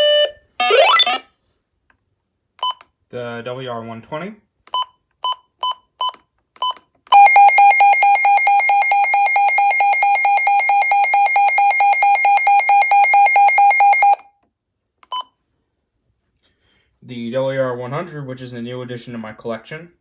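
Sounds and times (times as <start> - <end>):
warbling electronic alert siren: 0.0 - 1.3, 7.2 - 14.2
short beeps: 6.6 - 14.2.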